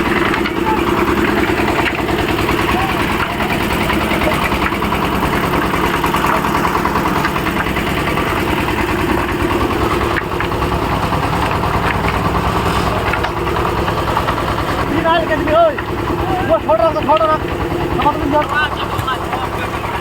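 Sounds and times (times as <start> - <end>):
construction machine engine running: 0.0 - 20.0.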